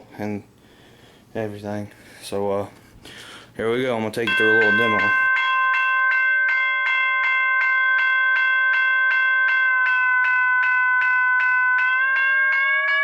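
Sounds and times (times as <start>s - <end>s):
electronic crossing bell ringing: 4.3s - 13.0s.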